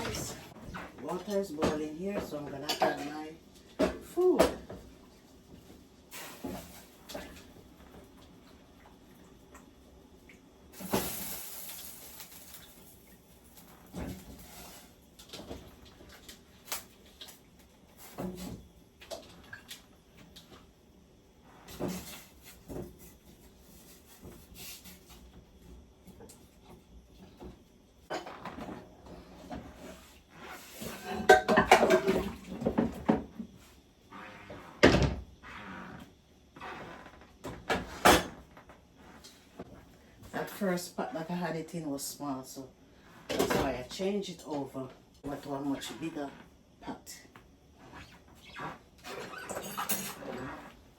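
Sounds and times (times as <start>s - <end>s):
pots and utensils clattering: 0.0s - 4.8s, 30.7s - 33.3s, 49.2s - 50.8s.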